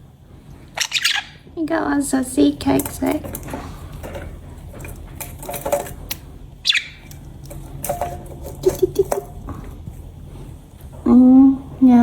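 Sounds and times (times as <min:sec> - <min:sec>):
budgie chirps: 0:00.8 - 0:01.4, 0:06.6 - 0:07.0.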